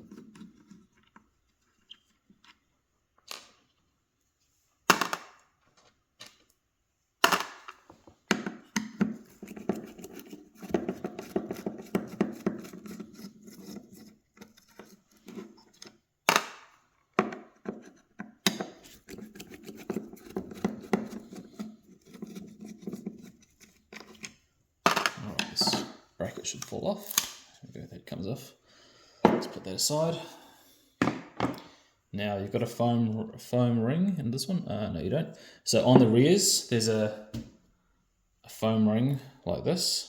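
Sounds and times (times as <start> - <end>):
plastic knocks and clacks: 7.2 - 23.3.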